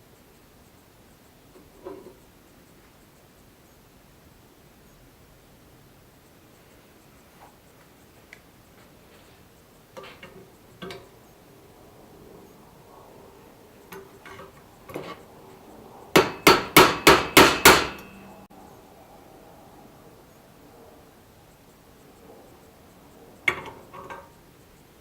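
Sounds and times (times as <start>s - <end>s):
hammer striking steel: 16.2s - 18.4s.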